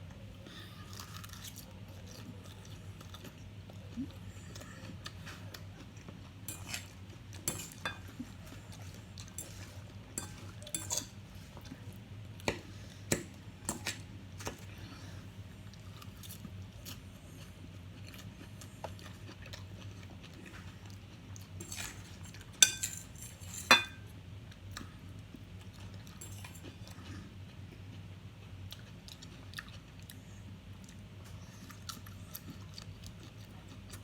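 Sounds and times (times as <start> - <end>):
steady low hum: 0.0 - 34.0
chewing: 0.5 - 11.0, 15.6 - 22.5, 24.5 - 34.0
cutlery clinking on a plate: 6.5 - 8.3, 9.4 - 11.2, 21.6 - 24.1, 26.2 - 26.7.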